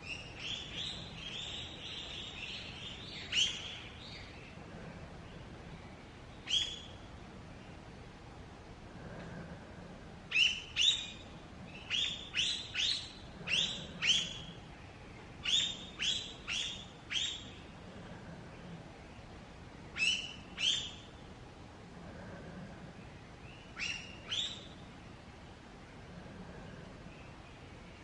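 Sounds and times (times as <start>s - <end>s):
bird sharp calls: 11.8s - 14.5s.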